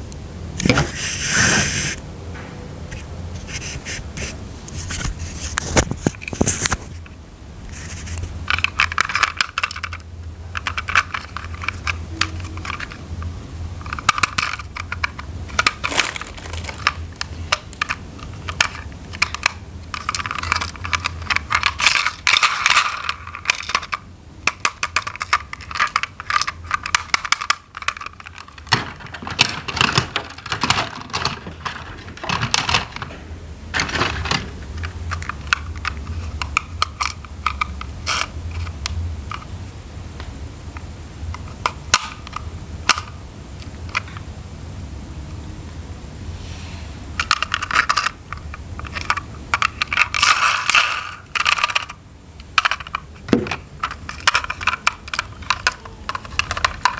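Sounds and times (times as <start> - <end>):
low steady hum: 0.0 - 56.9
plastic toy parts clicking: 8.5 - 13.0, 13.8 - 33.1, 33.8 - 39.4, 41.3 - 43.2, 47.2 - 56.9.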